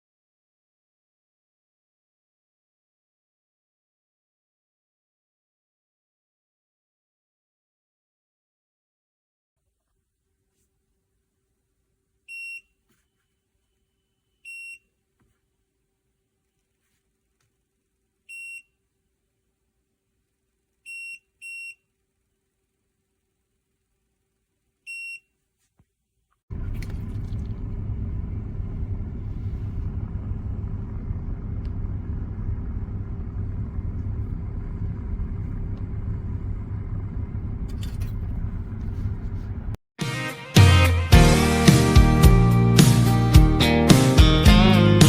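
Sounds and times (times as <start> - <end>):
steady low rumble: 26.5 - 39.8.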